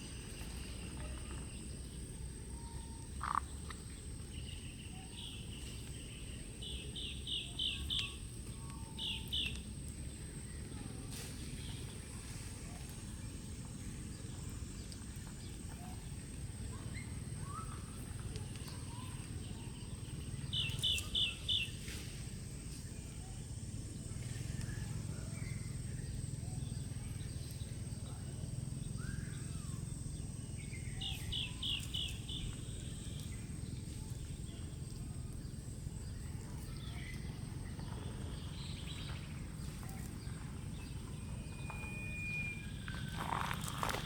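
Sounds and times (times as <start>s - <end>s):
bird-like high chirps: 40.8s - 44.0s.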